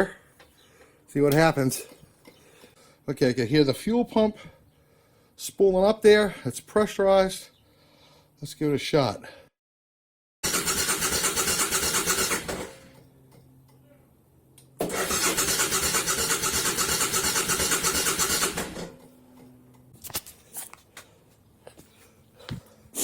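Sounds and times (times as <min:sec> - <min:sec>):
starter motor cranking: 0:10.4 - 0:13.0, 0:14.8 - 0:19.0.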